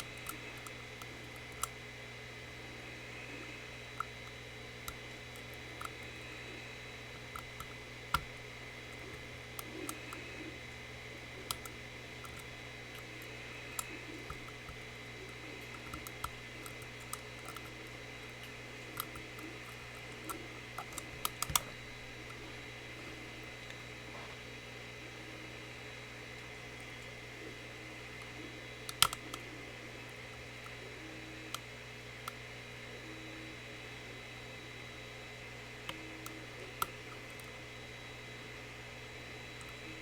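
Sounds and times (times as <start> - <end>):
steady hum and faint whine: 0.0 - 40.0
lock-picking tools clicking and scraping: 11.4 - 22.6.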